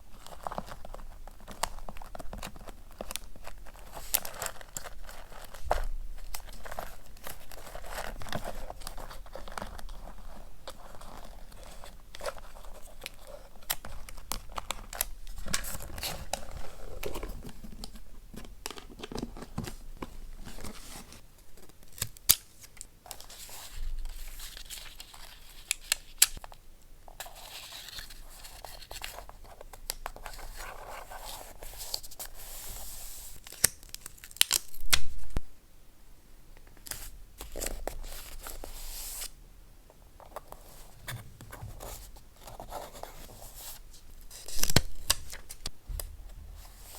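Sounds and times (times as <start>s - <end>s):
paper rustling and tearing: 41.2s - 45.7s.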